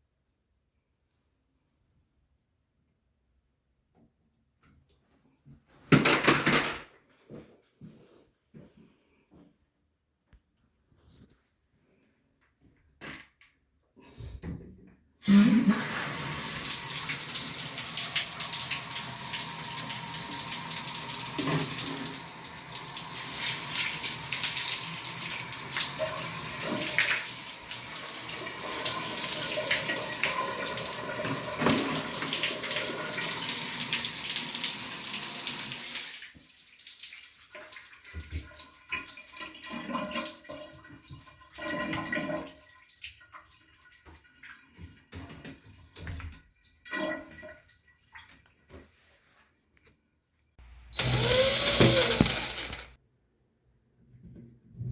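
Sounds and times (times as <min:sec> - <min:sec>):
shower water running into bathtub: 0:15.2 - 0:49.4.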